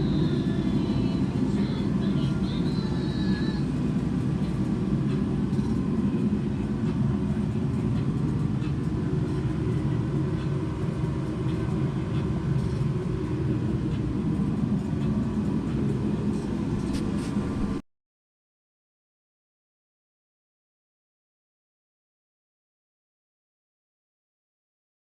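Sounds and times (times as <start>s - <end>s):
low engine rumble: 0.0s - 17.8s.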